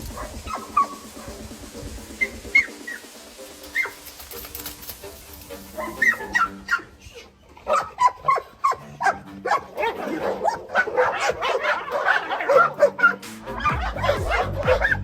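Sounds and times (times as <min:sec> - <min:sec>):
dog whining and yipping: 0:02.2 - 0:03.1, 0:03.7 - 0:04.0, 0:05.8 - 0:15.0.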